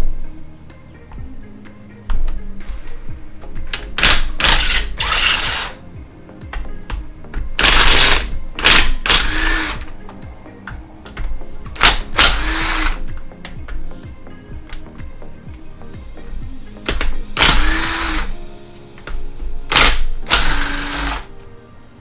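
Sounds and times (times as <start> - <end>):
impact wrench whine: 2.6 - 5.8, 6.6 - 10.0, 11.2 - 13.8, 16.8 - 18.4, 19.0 - 21.4
impact wrench bursts: 3.6 - 5.8, 6.9 - 10.0, 11.3 - 13.8, 16.8 - 18.4, 19.0 - 21.4.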